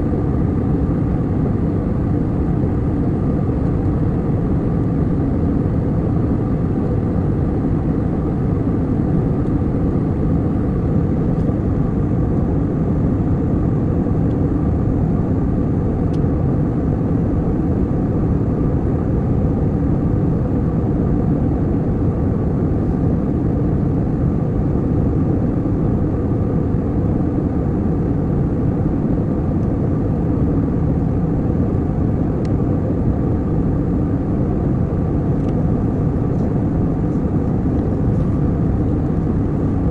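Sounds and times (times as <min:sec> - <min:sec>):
airliner cabin engine rumble: 0:00.0 - 0:39.9.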